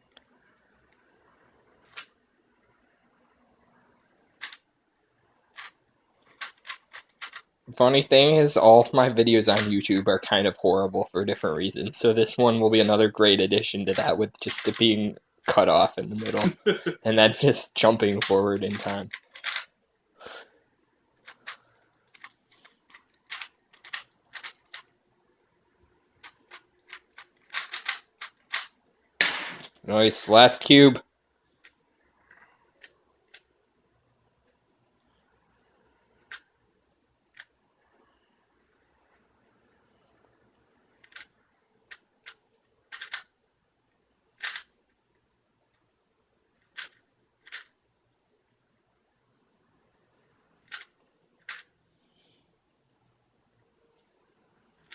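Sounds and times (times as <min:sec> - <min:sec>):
puzzle cube plastic clicks: 0:01.8 - 0:02.7, 0:04.0 - 0:04.6, 0:05.6 - 0:07.5, 0:09.5 - 0:10.1, 0:13.9 - 0:15.6, 0:16.2 - 0:16.6, 0:18.0 - 0:19.7, 0:21.2 - 0:24.9, 0:26.2 - 0:29.8, 0:32.8 - 0:33.5, 0:41.0 - 0:41.3, 0:41.9 - 0:43.3, 0:44.4 - 0:45.0, 0:46.6 - 0:47.8, 0:50.6 - 0:51.7.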